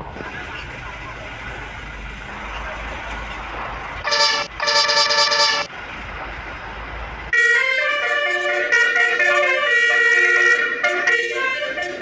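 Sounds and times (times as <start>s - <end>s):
bus horn blasts and tune: 4.0s - 5.7s, 7.3s - 12.0s.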